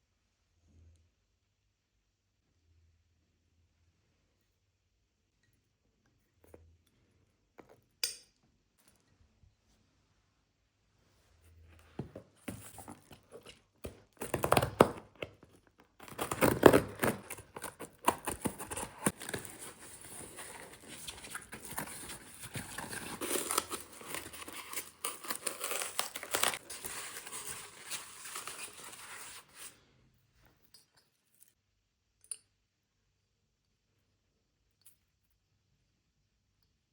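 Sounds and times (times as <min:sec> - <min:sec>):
packaging crinkling and tearing: 0:12.6 - 0:29.8.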